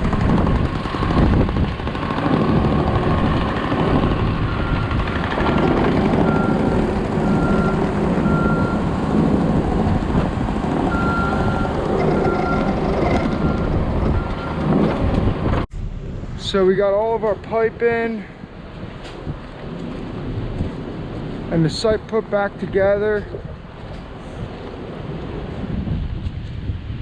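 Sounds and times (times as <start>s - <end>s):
diesel machine running: 0.0s - 21.6s
backup alarm beeping: 4.5s - 5.0s, 6.1s - 8.9s, 10.9s - 14.6s.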